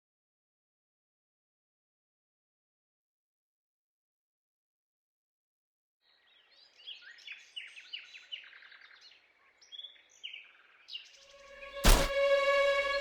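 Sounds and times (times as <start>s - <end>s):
sudden loud hit: 11.8s - 12.4s.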